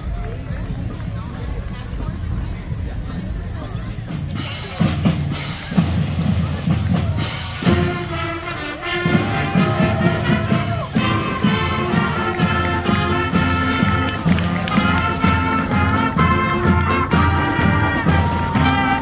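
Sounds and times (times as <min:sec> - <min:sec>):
marching band drumbeat: 0:03.9 - 0:19.0
brass melody: 0:07.2 - 0:19.0.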